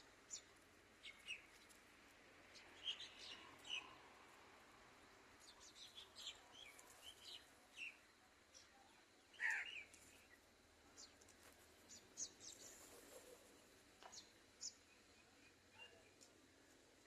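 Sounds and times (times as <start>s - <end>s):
bird chirps: 5.4s - 10.4s.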